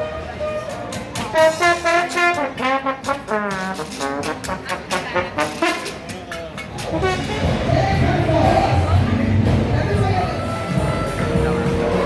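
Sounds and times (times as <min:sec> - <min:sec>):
trombone: 0:00.0 - 0:06.2, 0:06.8 - 0:12.0
trumpet: 0:00.0 - 0:06.2, 0:06.8 - 0:09.0.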